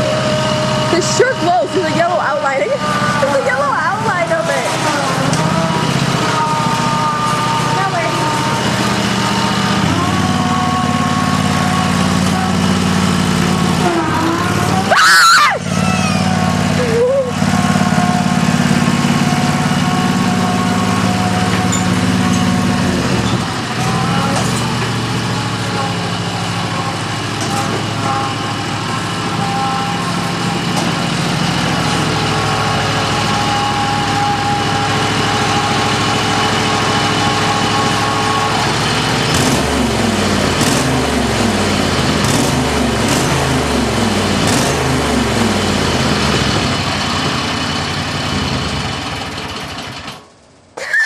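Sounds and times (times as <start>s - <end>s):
riding lawnmower engine running: 0.0s - 51.0s.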